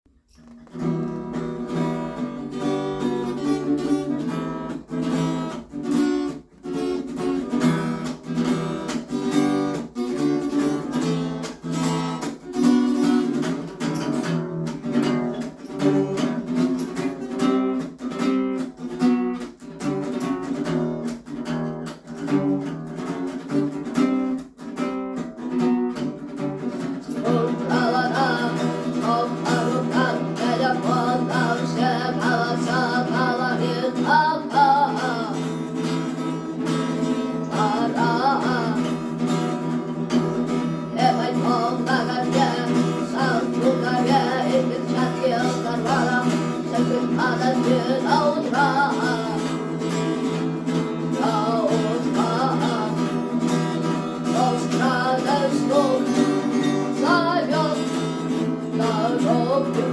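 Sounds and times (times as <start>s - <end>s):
acoustic guitar strumming: 0.2s - 59.9s
boy singing: 26.6s - 59.9s.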